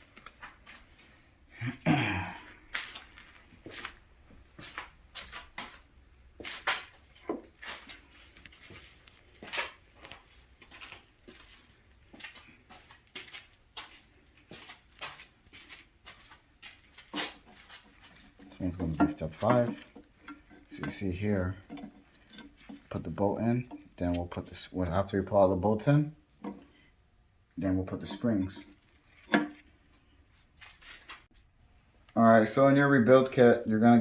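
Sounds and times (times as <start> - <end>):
metal parts clicking and knocking: 16.7 - 24.2.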